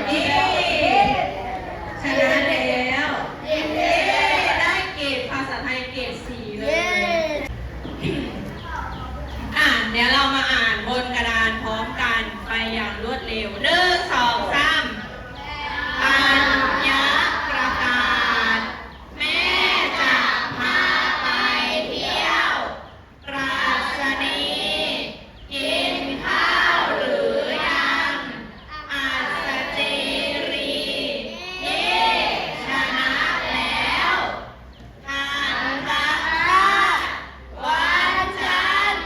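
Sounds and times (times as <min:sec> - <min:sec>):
children singing in unison: 0:03.3 - 0:05.0, 0:15.4 - 0:39.0.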